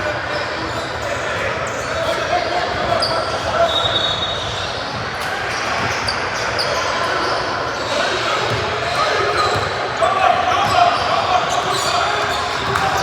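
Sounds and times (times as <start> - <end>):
hubbub of players and spectators: 0.0 - 13.0
basketball bouncing on court: 11.6 - 13.0.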